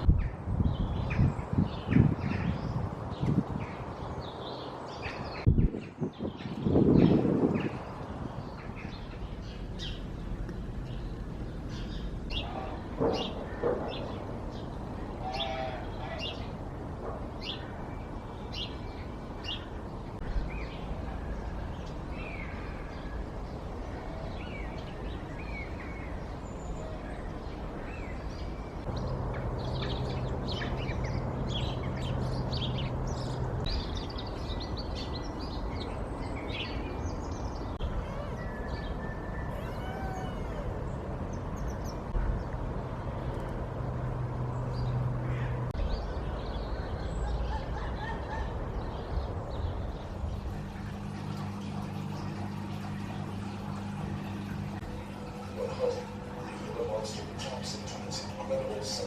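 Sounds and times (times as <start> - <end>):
birds chirping: 0.0 - 59.0
low steady hum: 48.4 - 59.0.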